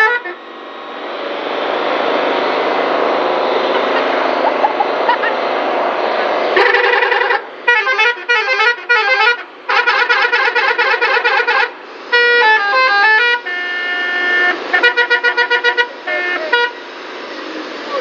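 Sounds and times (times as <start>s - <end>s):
multi-tone musical horn: 0.0s - 0.4s, 6.6s - 16.8s.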